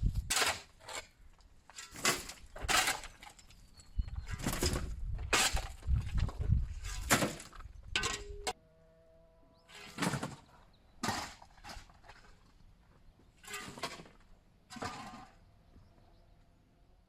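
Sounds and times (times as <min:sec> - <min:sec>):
rubble crunching impacts: 0:00.0 - 0:08.6, 0:09.8 - 0:15.9.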